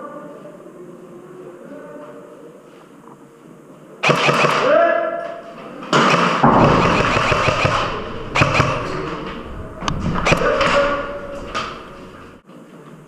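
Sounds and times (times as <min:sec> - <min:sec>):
rumbling noisy background: 0:05.4 - 0:12.4
sharp knocks and thuds: 0:06.0 - 0:12.4.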